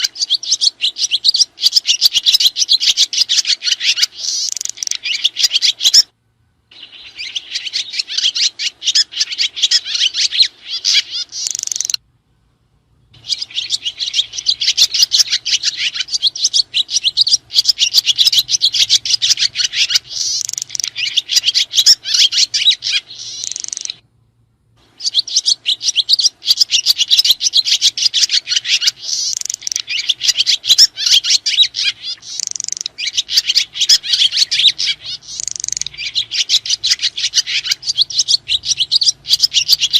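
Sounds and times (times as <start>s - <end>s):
swiftlets twittering: 6.8s - 12.0s, 13.2s - 24.0s, 25.0s - 39.9s.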